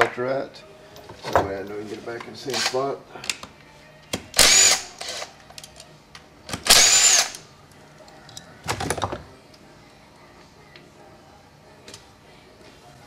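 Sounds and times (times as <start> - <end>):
power tool spinning bolts: 4.4 - 5.3, 6.6 - 7.4.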